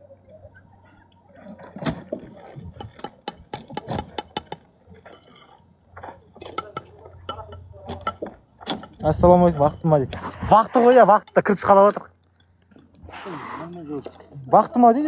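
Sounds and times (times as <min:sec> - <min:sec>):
low voices: 0:09.0 - 0:11.3, 0:13.0 - 0:14.8.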